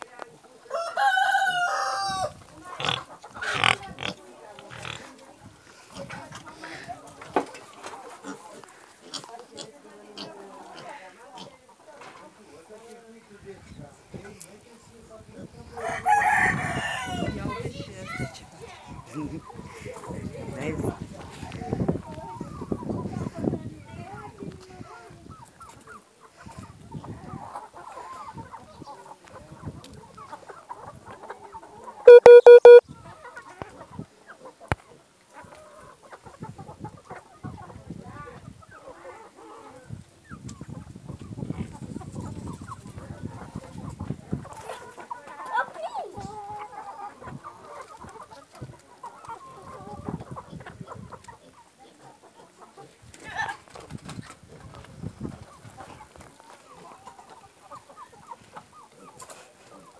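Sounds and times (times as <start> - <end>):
chickens clucking softly: 0.2 - 12.4, 24.3 - 59.9
loud rapid beeps: 32.1 - 32.8.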